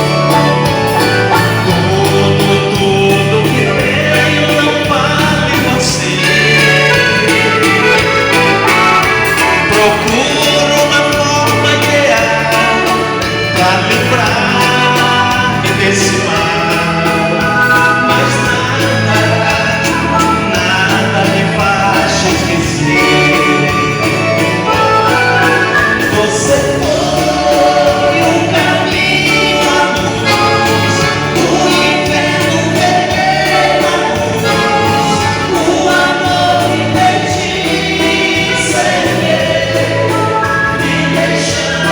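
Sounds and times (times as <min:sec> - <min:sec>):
dance band playing a waltz: 0:00.0 - 0:41.9
person singing: 0:00.0 - 0:41.9.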